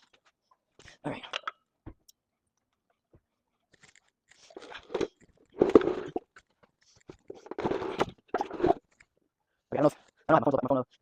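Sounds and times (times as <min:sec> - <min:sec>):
bike parts crunching and scraping: 0:03.7 - 0:09.0.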